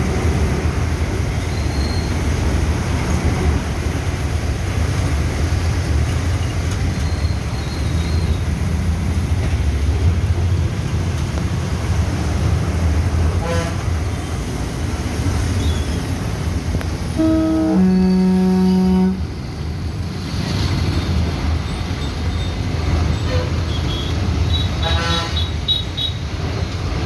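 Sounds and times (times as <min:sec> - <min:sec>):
road traffic rumble: 0:00.0 - 0:27.0
vehicle horn toot: 0:17.2 - 0:19.2, 0:23.3 - 0:26.1.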